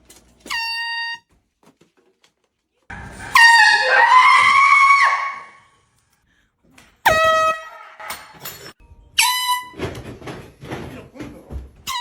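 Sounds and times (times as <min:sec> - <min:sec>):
air horn blast: 0:02.9 - 0:04.1.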